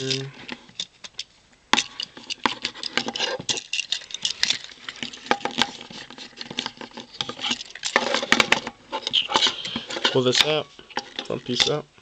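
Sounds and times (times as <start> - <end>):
plastic toy parts clicking: 0.0 - 5.8.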